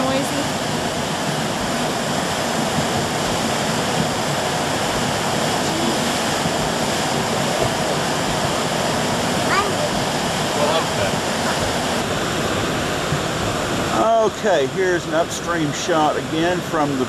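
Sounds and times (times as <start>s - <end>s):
river rushing: 0.0s - 17.0s.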